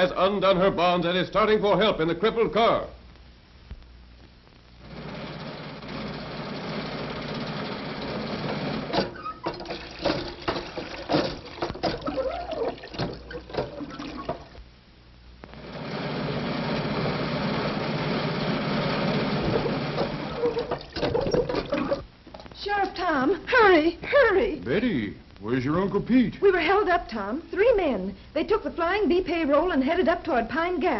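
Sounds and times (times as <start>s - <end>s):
clattering knocks: 8.9s - 14.5s.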